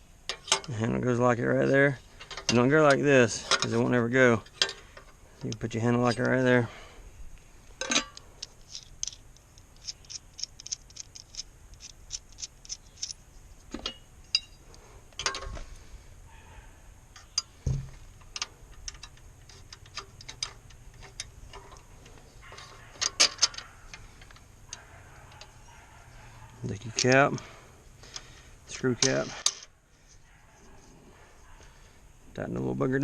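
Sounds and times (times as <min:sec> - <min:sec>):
light ticks of parts handled: 0:07.3 - 0:15.8, 0:17.1 - 0:31.7.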